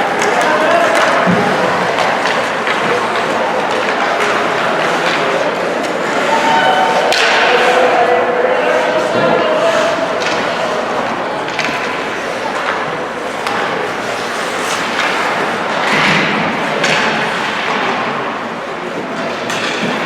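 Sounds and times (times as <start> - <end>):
skates scraping on ice: 0.0 - 18.0
hockey sticks and puck clacking: 0.0 - 20.0.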